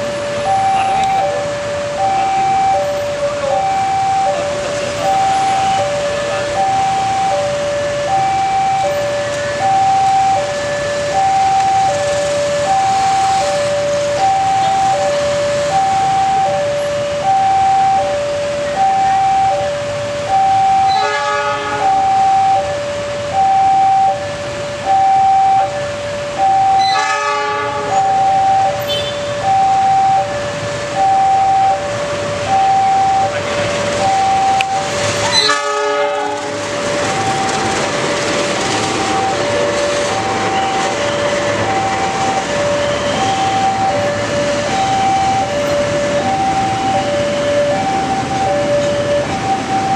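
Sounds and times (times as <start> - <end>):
level crossing two-tone alarm: 0.0 - 49.9
train horn: 20.9 - 22.0, 26.8 - 28.0, 35.2 - 36.6.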